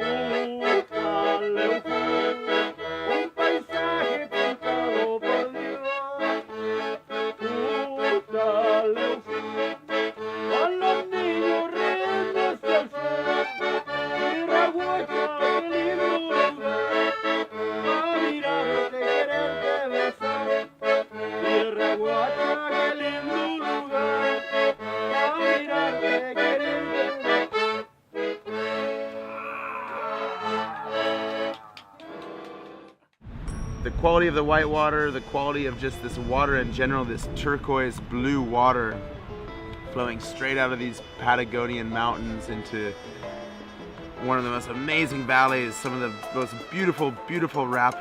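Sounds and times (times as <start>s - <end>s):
background music with steady beat: 39.8s - 48.0s.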